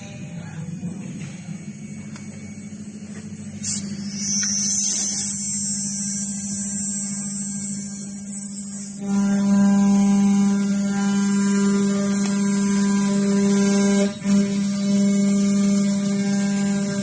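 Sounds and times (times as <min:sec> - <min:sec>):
high-pitched machine whine: 0:00.0 - 0:17.0
machine humming: 0:00.0 - 0:17.0.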